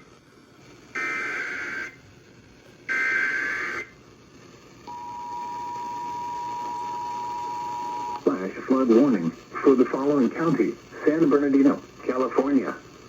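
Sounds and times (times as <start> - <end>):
buzzy data bursts: 1.0 - 2.0, 2.9 - 4.0, 4.9 - 12.8
two-tone attention signal: 4.9 - 8.2.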